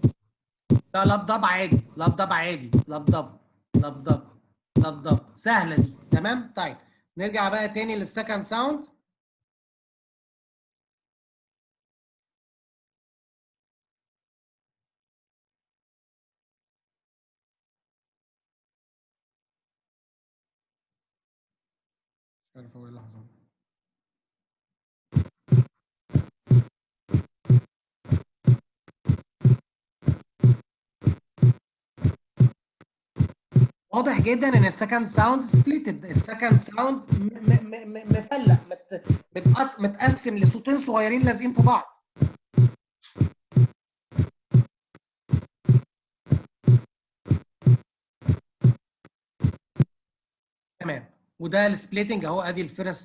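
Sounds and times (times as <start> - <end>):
heartbeat lub-dub: 0.0 - 6.4, 25.2 - 32.6, 33.2 - 44.7, 45.3 - 48.8.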